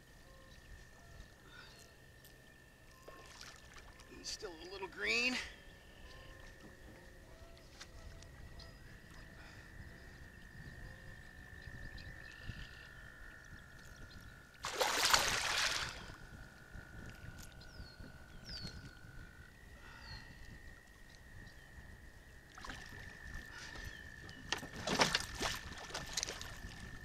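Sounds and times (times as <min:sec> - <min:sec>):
fish splashing in water: 0:14.6 - 0:16.1.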